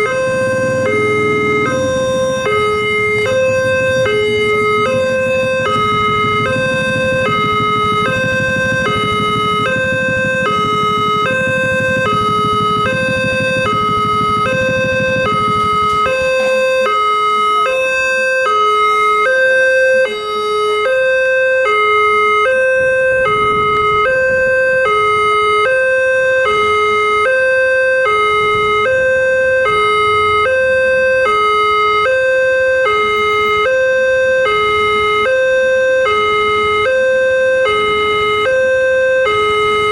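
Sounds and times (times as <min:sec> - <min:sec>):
low rumble: 0:00.0 - 0:16.8
level crossing two-tone alarm: 0:00.0 - 0:39.9.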